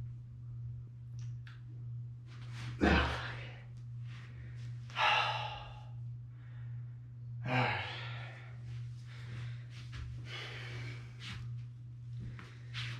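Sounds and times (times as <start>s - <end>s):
steady low hum: 0.0s - 12.9s
person sighing: 2.8s - 3.5s.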